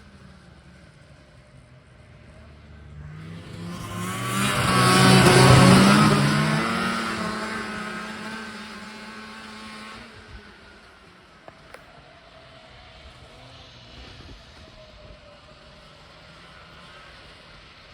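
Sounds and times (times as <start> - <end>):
motor vehicle passing by: 0.1 - 11.7.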